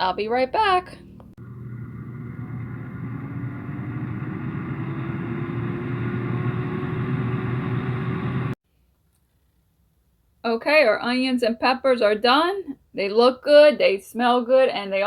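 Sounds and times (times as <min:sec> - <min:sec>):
air fryer fan humming: 0:01.4 - 0:08.6.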